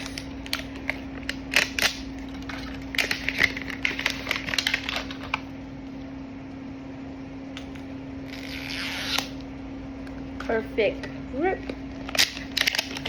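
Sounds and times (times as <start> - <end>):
plastic packaging crinkling: 0.0 - 5.6, 11.8 - 13.0.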